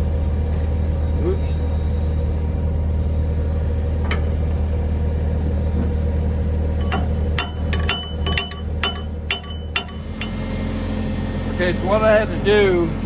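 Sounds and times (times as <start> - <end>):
steady low hum: 0.0 - 13.0
sharp metallic clinks: 6.8 - 10.5.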